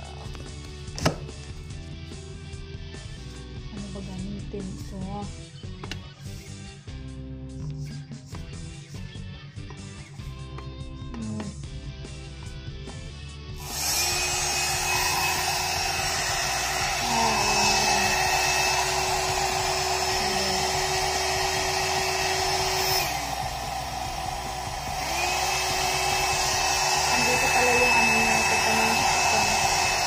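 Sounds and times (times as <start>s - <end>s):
hair dryer blowing: 13.5s - 30.0s.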